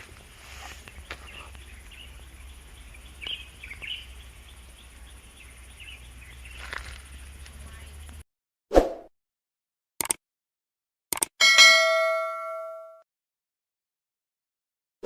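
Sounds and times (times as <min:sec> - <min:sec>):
birds chirping: 0:00.0 - 0:08.2.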